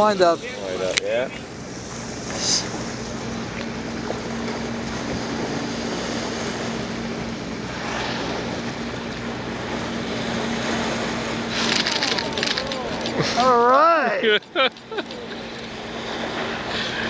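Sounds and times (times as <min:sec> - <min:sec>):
boat engine humming: 0:00.0 - 0:17.0
sea noise: 0:00.0 - 0:17.0
wind: 0:00.0 - 0:17.0.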